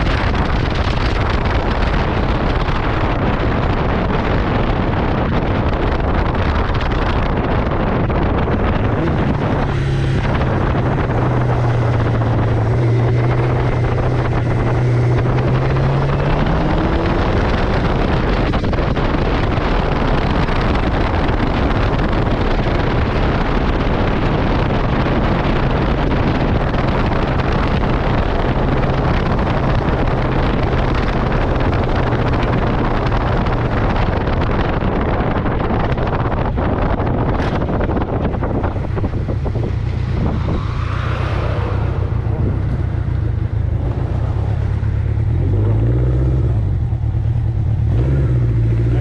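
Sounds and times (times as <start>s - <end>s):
motorcycle engine droning: 0.0s - 49.0s
wind rushing over microphone: 0.0s - 49.0s.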